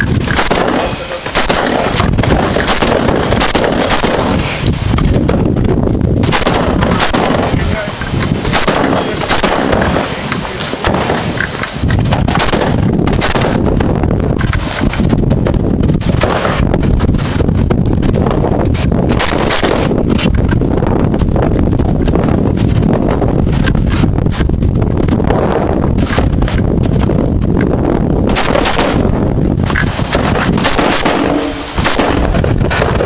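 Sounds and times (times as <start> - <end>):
rifle shots: 0.0 - 5.5, 6.2 - 14.0, 15.3 - 16.7, 19.0 - 20.1, 28.2 - 33.0
steady outdoor noise: 0.0 - 33.0.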